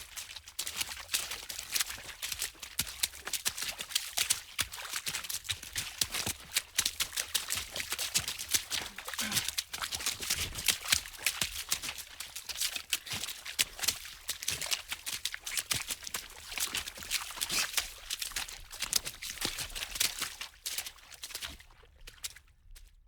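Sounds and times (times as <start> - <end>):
water splashing: 8.3 - 10.9.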